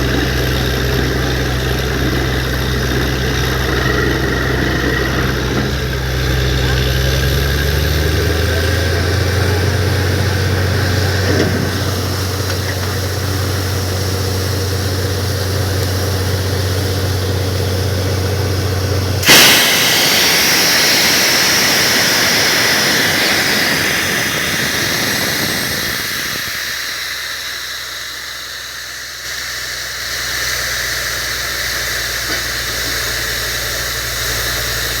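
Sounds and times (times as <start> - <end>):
drilling rig engine running: 0.0 - 35.0
loud hissing rush of air and water: 8.0 - 17.0, 19.2 - 35.0.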